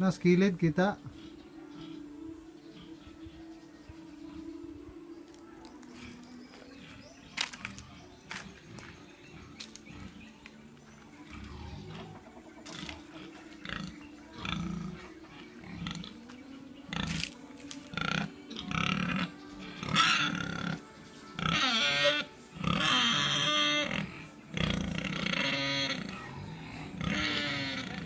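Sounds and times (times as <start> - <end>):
pigs grunting: 1.0 - 3.4, 6.7 - 28.0
pigs squealing loudly: 11.2 - 16.2, 16.9 - 20.8, 21.4 - 28.0.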